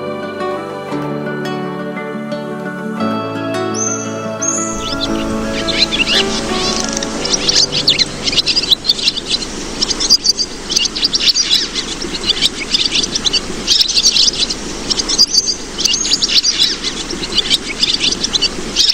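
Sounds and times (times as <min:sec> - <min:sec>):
small birds chirping and trilling: 0:03.8 - 0:18.9
faint rural background: 0:04.7 - 0:18.9.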